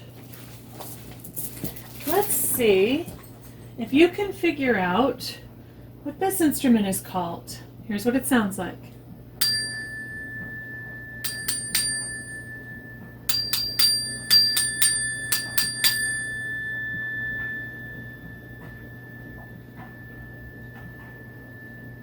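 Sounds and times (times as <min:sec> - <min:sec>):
metal chime ringing: 0:09.4 - 0:22.0.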